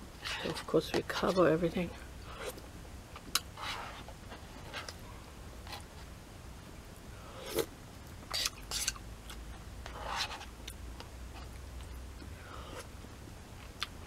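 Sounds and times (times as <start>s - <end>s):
eating mouth noises: 8.3s - 9.0s.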